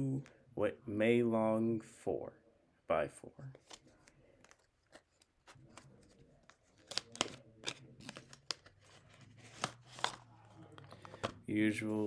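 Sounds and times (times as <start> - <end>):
packaging being opened: 3.6 - 11.4.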